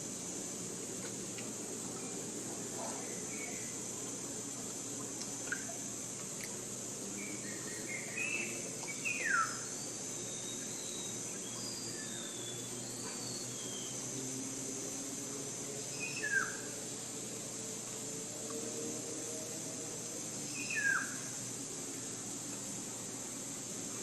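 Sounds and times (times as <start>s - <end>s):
high drone of insects: 0.0s - 24.0s
bird calls: 7.4s - 14.0s, 20.5s - 21.2s.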